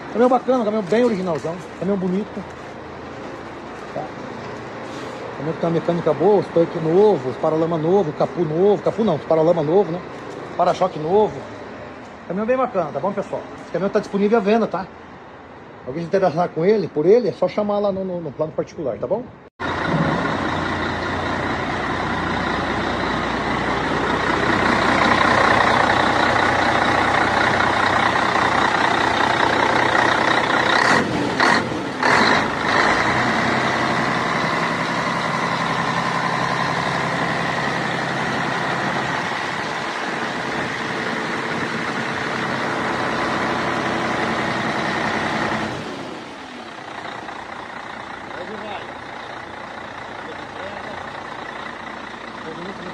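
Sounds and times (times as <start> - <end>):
heavy truck diesel engine running: 0.0 - 15.6, 19.6 - 52.9.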